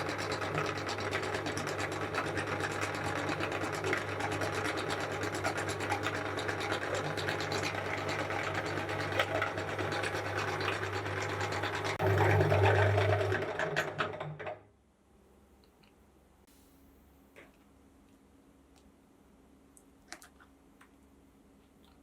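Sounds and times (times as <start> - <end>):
meat grinder crunching cone: 0.0 - 14.4.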